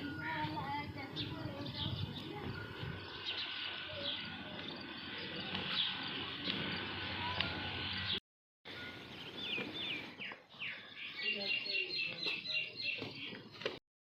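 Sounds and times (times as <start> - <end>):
outdoor background hum: 0.0 - 10.9
small birds chirping: 0.0 - 13.8.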